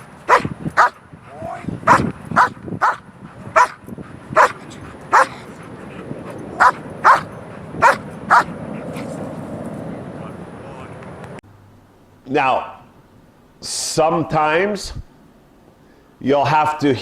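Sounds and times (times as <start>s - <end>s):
steady background noise: 0.0s - 17.0s
dog barking: 0.3s - 1.0s, 1.9s - 3.0s, 3.6s - 3.8s, 4.4s - 5.4s, 6.6s - 8.6s.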